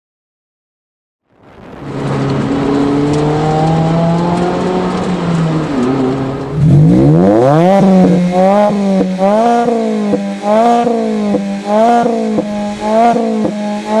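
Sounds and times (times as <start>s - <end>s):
car engine revving: 1.4s - 14.0s.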